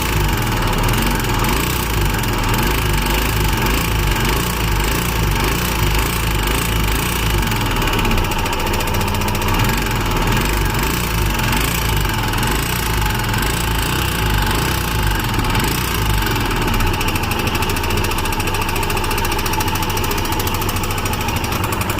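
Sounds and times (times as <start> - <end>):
motorcycle engine ticking clatter: 0.0 - 21.9.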